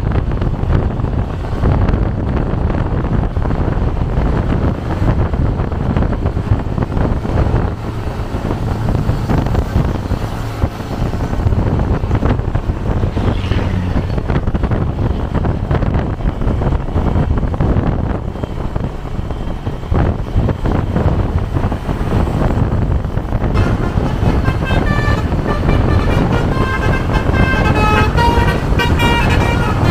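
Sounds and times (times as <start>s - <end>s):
road vehicle rumble: 0.0s - 29.9s
traffic: 0.0s - 29.9s
wind buffeting microphone: 0.0s - 29.9s.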